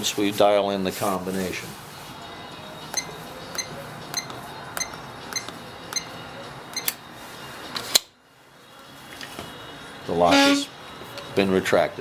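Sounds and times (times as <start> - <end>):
keypad beeps: 3.0 - 6.1.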